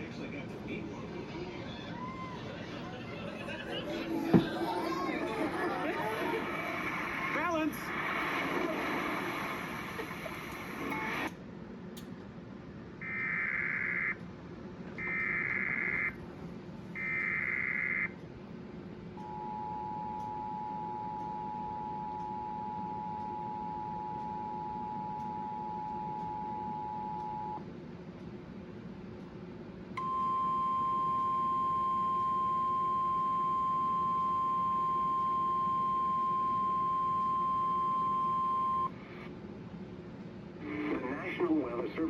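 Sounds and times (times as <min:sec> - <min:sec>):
two-tone attention signal: 0:30.0 - 0:39.0.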